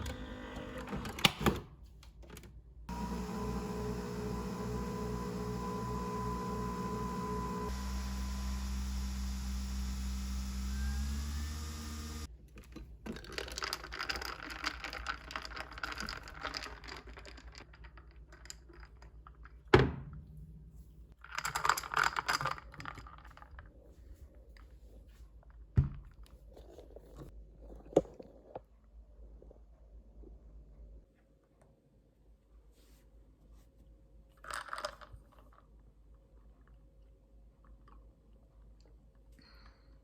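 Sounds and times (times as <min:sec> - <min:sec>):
low hum: 0:02.9 - 0:12.3.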